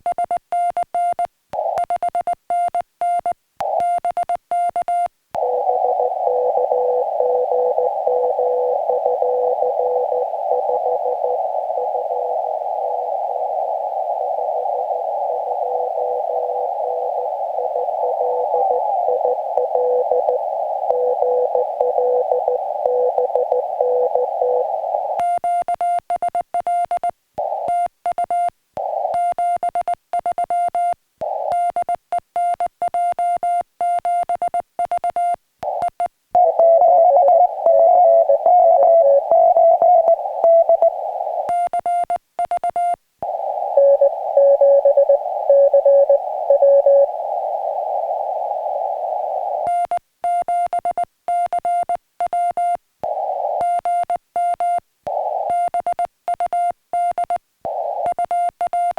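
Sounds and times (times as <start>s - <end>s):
radio receiver hiss: 5.4s - 25.2s, 27.4s - 27.7s, 28.8s - 29.3s, 31.2s - 31.6s, 35.6s - 41.7s, 43.2s - 50.0s, 53.0s - 53.9s, 55.1s - 55.8s, 57.7s - 58.4s.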